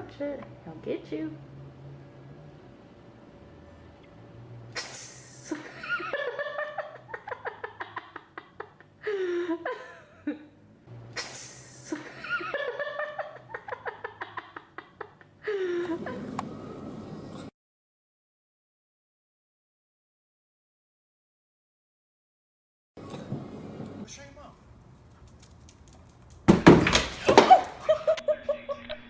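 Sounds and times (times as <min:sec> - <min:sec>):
people laughing: 0:04.7 - 0:17.0, 0:27.2 - 0:29.0.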